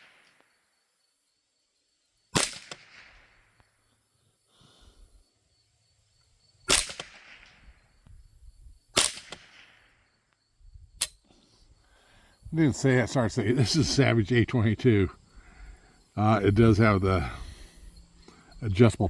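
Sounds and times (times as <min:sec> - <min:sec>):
rifle shots with echo: 0:02.4 - 0:03.5, 0:06.7 - 0:07.8, 0:09.0 - 0:10.0.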